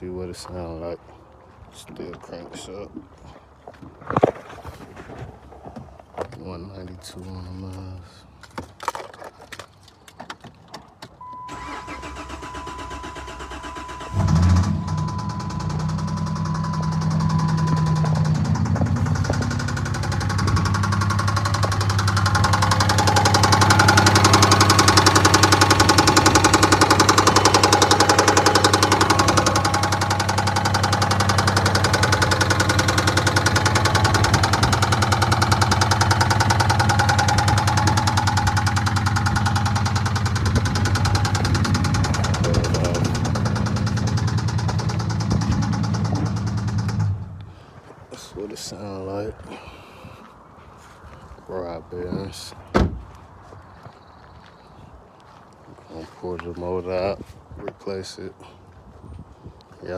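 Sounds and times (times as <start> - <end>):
car engine knocking: 14.2 - 47.3.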